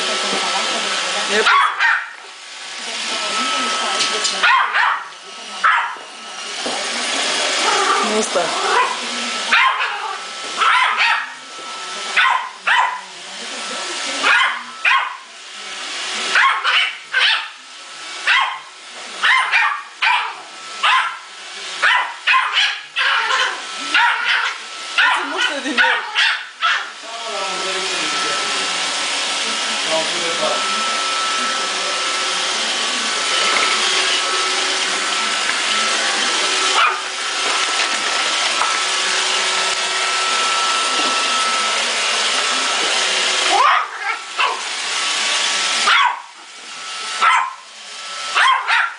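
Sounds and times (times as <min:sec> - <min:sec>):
robot vacuum motor and brushes: 0:00.0 - 0:48.9
small dog barking: 0:01.4 - 0:02.2, 0:04.4 - 0:06.0, 0:08.6 - 0:11.4, 0:12.2 - 0:13.0, 0:14.2 - 0:15.2, 0:16.3 - 0:17.5, 0:18.2 - 0:21.2, 0:21.8 - 0:26.9, 0:36.8 - 0:37.1, 0:43.5 - 0:44.6, 0:45.8 - 0:46.3, 0:47.2 - 0:47.6, 0:48.4 - 0:48.9.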